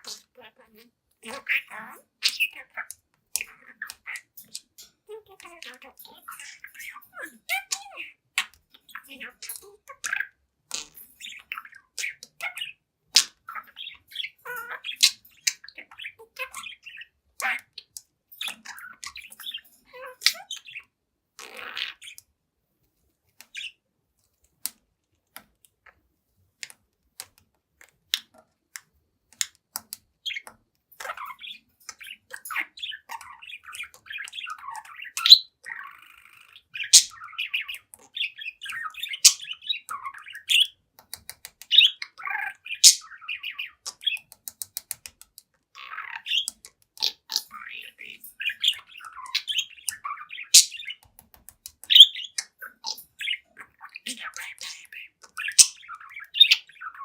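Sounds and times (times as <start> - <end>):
budgerigar chirping and chattering: 0.0 - 22.2, 23.5 - 23.8, 30.2 - 57.0
bird clicks: 26.6 - 31.1, 41.0 - 41.8, 43.8 - 45.5, 50.6 - 52.5.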